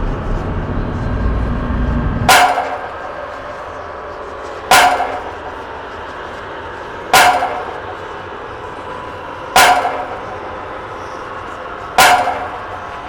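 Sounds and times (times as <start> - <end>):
steady low background noise: 0.0 - 13.0
sharp strike with short ring: 12.0 - 12.9.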